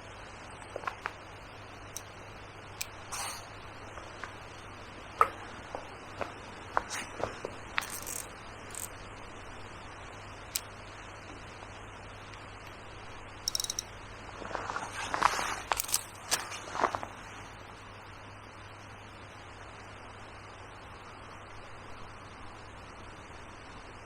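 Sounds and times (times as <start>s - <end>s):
fishing tackle clicks and taps: 7.8s - 8.9s, 13.5s - 13.9s, 15.8s - 16.1s
high rattling chirp: 7.8s - 9.0s, 13.5s - 13.9s.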